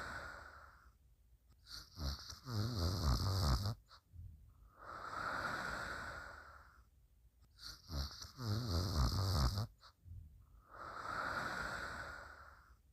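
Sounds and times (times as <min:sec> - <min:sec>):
person snoring: 0:01.6 - 0:04.0, 0:04.7 - 0:06.9, 0:07.6 - 0:10.0, 0:10.6 - 0:12.8.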